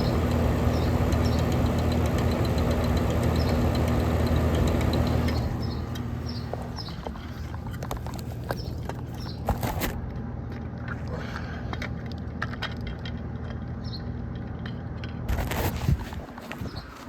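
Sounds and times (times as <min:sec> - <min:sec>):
air conditioner unit humming: 0:00.0 - 0:17.0
light clicks and crunches: 0:14.4 - 0:17.0.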